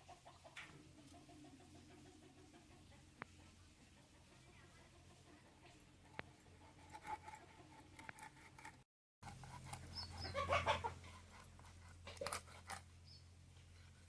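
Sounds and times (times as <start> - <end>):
chicken clucking: 0.0 - 6.6, 9.5 - 11.3.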